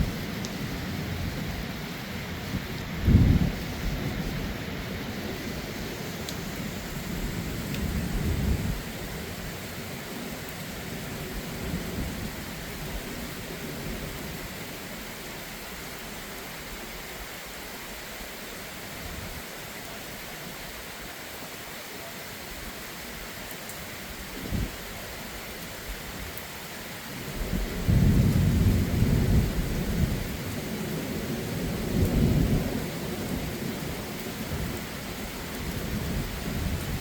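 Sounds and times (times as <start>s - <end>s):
heavy rain falling: 0.0s - 37.0s
rolling thunder rumble: 2.4s - 5.2s, 7.1s - 9.4s, 27.2s - 37.0s
sharp thunderclap: 3.0s - 3.6s.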